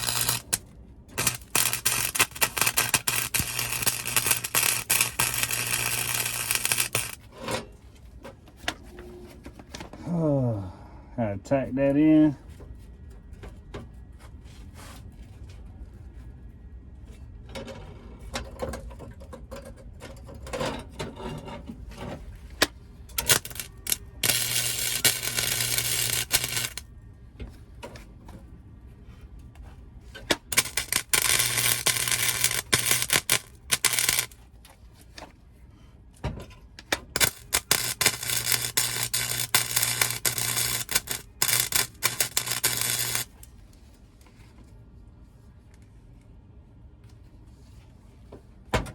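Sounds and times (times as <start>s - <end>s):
welding arc crackling: 0.0s - 7.2s, 23.2s - 26.8s, 30.4s - 34.4s, 37.1s - 43.5s
low welder hum: 0.0s - 7.4s, 22.2s - 27.0s, 29.4s - 34.6s, 36.8s - 43.7s.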